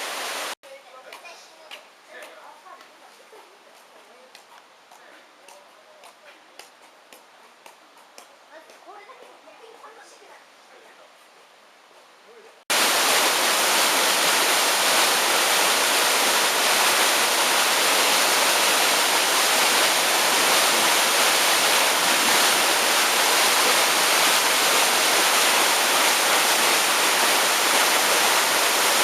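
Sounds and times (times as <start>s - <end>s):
floodwater rushing: 0.0s - 0.6s, 12.7s - 29.0s.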